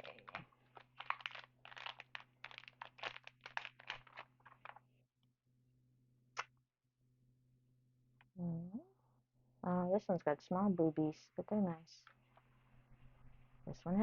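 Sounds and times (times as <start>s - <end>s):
plastic wrapper crinkling: 0.0s - 4.8s.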